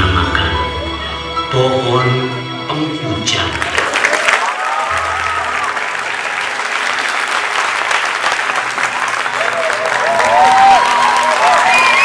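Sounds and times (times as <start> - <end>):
audience applauding: 3.5 - 12.0.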